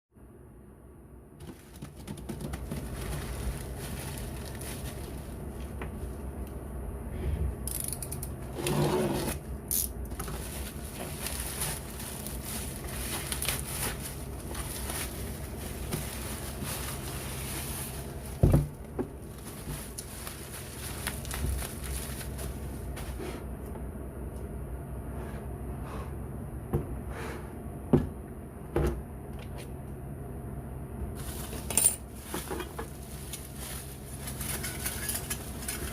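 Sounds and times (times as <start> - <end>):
steady low hum: 0.2 - 35.9
packaging scraping and crackling: 1.4 - 6.2, 7.9 - 18.4, 19.2 - 23.0, 31.2 - 35.9.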